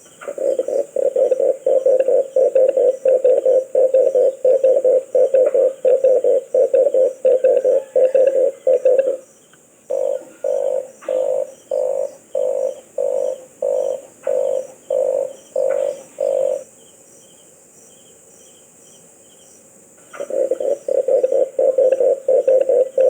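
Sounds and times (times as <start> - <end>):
dove cooing: 0.0 - 9.3, 9.9 - 16.7, 20.1 - 23.0
faint high bird chirps: 7.4 - 19.4.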